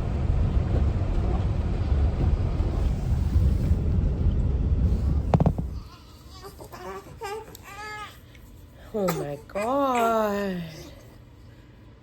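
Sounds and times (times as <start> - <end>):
car driving rumble from inside: 0.0 - 5.8.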